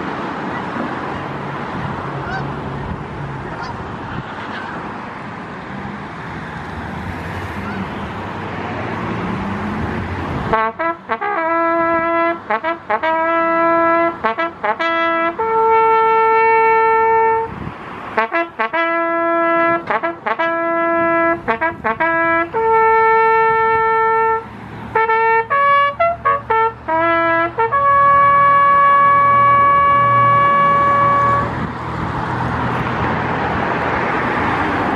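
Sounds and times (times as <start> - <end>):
traffic noise: 0.0 - 34.9
brass horn bugle call: 2.2 - 2.5, 10.5 - 17.5, 18.2 - 31.6.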